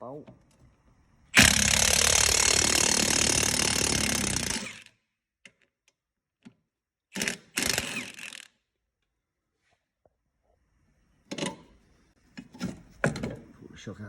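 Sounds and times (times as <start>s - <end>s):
pneumatic impact gun hammering: 1.4s - 4.9s, 7.2s - 8.4s.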